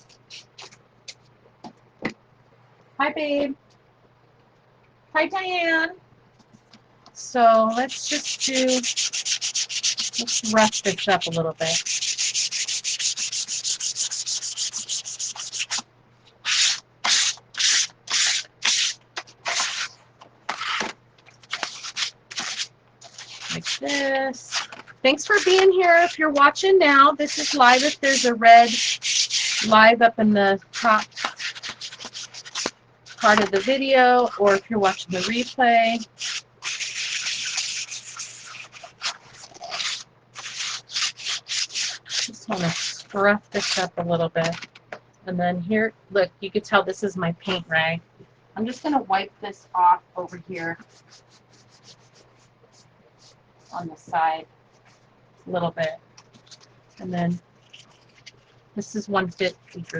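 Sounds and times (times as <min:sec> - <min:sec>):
sandpaper rubbing on wood: 0:07.7 - 0:15.8, 0:16.4 - 0:20.9, 0:21.5 - 0:26.6, 0:27.2 - 0:29.8, 0:30.7 - 0:43.9, 0:50.7 - 0:52.3.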